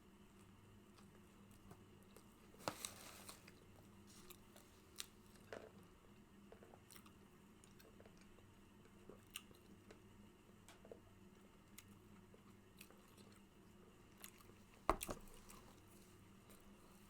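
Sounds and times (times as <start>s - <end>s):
chewing and mouth noises: 6.5s - 10.0s, 11.4s - 15.8s.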